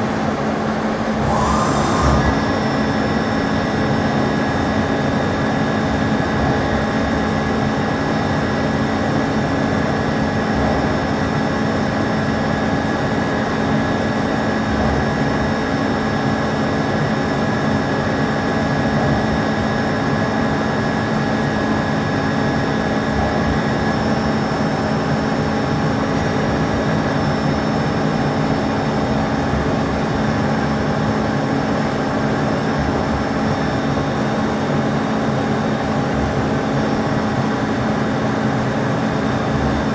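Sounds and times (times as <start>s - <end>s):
lathe machine hum: 0.9s - 4.5s
machine whining tones: 1.1s - 3.8s.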